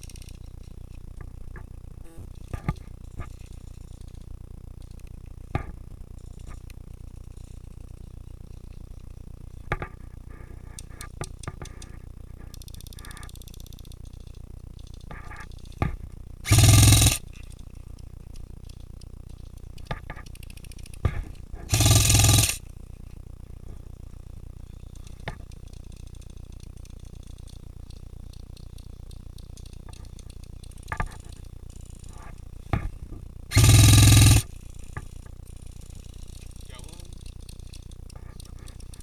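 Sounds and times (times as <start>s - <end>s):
faint clicks and knocks: 0.0s - 16.2s, 17.4s - 21.6s, 24.7s - 33.3s, 34.7s - 39.0s
airsoft rifle full-auto bursts: 16.4s - 17.4s, 21.7s - 22.7s, 33.5s - 34.8s.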